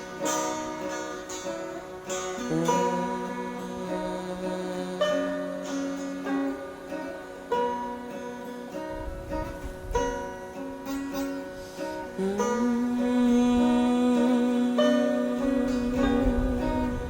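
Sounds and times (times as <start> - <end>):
guitar music: 0.0 - 17.0.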